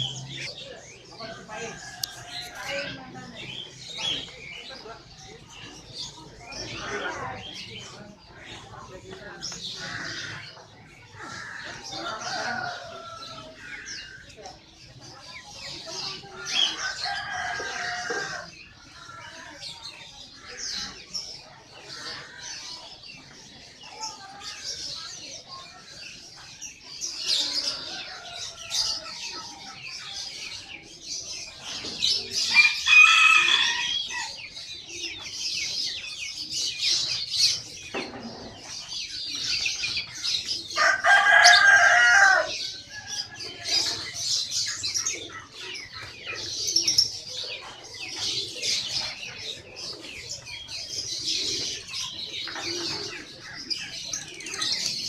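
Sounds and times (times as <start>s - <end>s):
songbirds chirping: 0.0s - 55.0s
rooster crowing: 32.5s - 34.4s, 40.8s - 42.6s.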